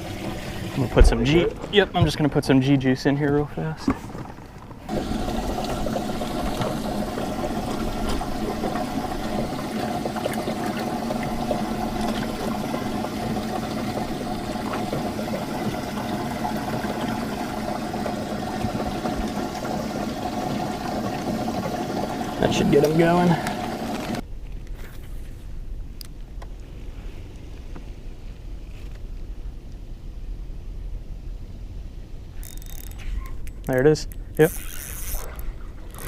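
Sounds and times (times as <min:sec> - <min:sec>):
pump motor hum: 0:00.0 - 0:02.3, 0:04.0 - 0:24.2
water splashing: 0:03.9 - 0:24.2.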